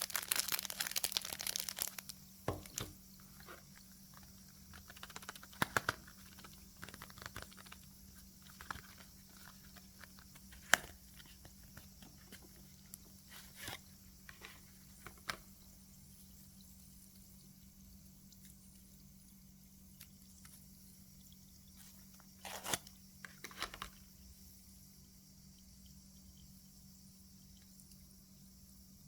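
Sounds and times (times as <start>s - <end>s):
plastic packaging rustling: 0.0s - 13.8s.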